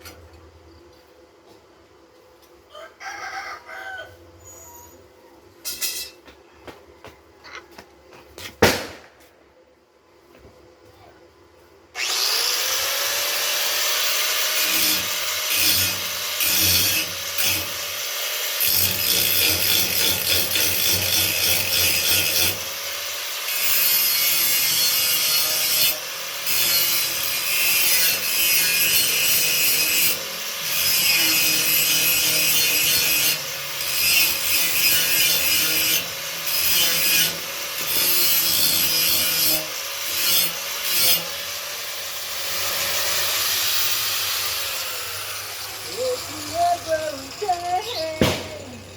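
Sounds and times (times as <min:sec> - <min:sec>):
power saw cutting wood: 0:12.0 - 0:48.9.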